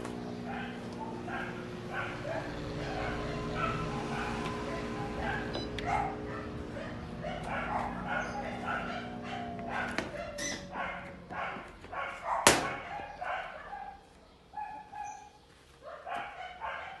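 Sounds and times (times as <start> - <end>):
dog barking: 0.1 - 17.0
dog whining: 0.4 - 13.4.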